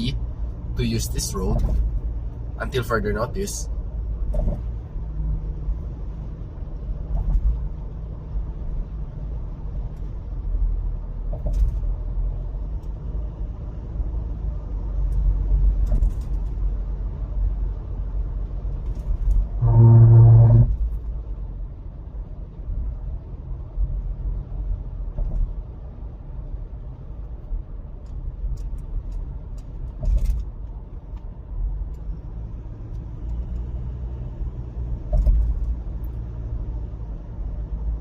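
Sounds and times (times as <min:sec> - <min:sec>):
car road noise rumble: 0:00.0 - 0:38.0
pitched buzzing tone: 0:19.6 - 0:20.8.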